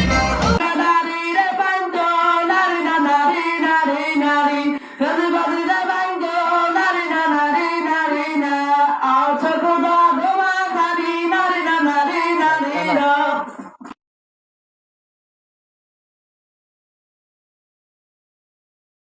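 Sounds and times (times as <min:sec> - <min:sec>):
high-pitched sung melody: 0:00.0 - 0:13.6.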